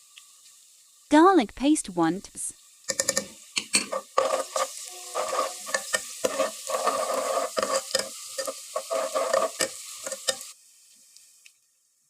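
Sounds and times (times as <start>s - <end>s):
garlic sizzling in hot oil: 0.0s - 12.0s
spoon scraping a pan: 2.9s - 10.5s.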